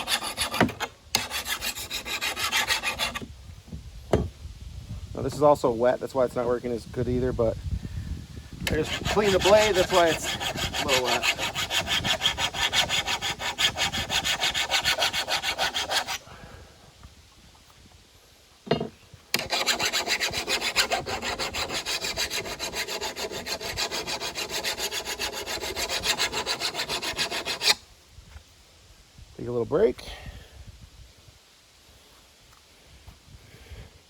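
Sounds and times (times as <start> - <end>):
file scraping steel blade: 0.0 - 3.2, 8.6 - 16.2, 19.4 - 27.8.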